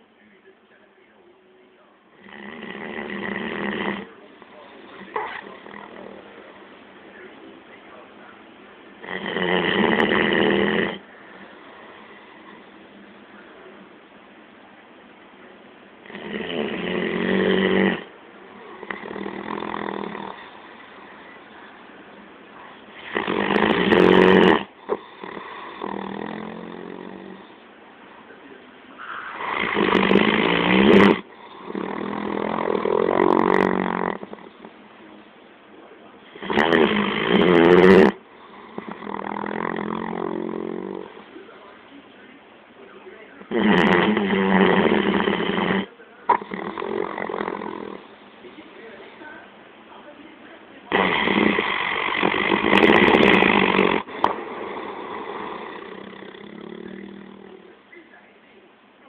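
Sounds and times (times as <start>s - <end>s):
dog snoring loudly: 2.2s - 4.2s, 4.8s - 6.3s, 9.0s - 12.7s, 16.0s - 21.2s, 22.9s - 27.6s, 29.0s - 34.7s, 36.2s - 41.3s, 43.4s - 48.2s, 50.9s - 57.7s.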